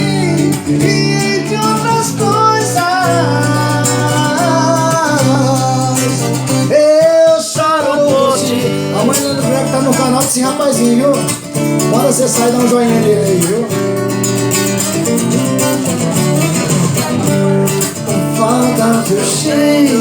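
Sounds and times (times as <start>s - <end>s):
person singing: 0.0s - 14.0s, 16.3s - 20.0s
guitar accompaniment: 0.0s - 20.0s
held chords: 11.6s - 20.0s.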